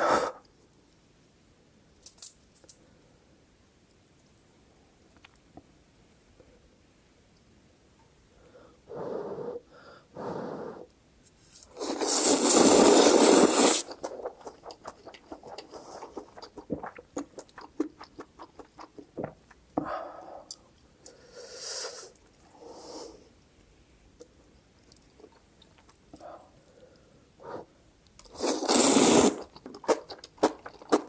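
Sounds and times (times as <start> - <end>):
noodles slurped: 11.8 - 19.1, 28.2 - 31.0
wet chewing with mouth clicks: 13.8 - 19.6, 29.4 - 31.0.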